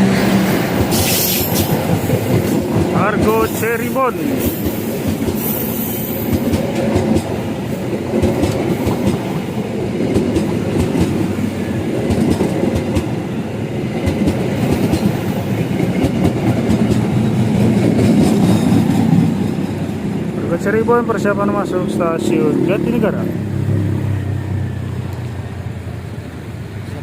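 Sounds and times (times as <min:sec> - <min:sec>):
train wheels clattering: 0:00.0 - 0:13.2, 0:13.9 - 0:20.2.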